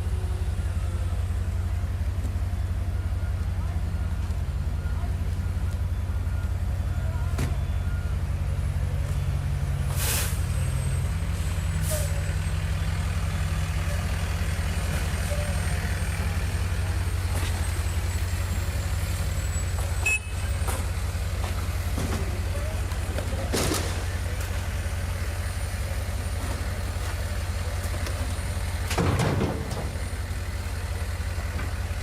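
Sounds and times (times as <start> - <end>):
vehicle engine idling: 0.0 - 32.0
short hiss: 9.9 - 10.6.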